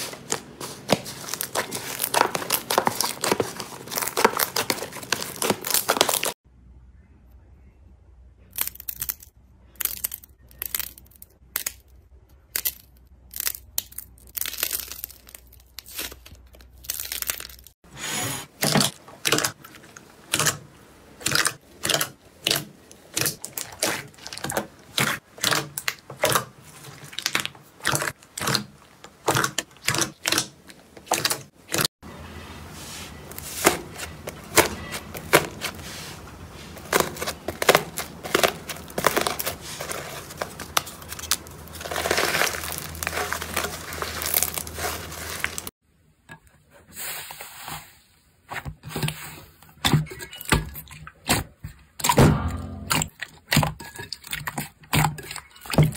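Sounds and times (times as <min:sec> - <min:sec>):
low steady hum: 0:06.4 - 0:13.3.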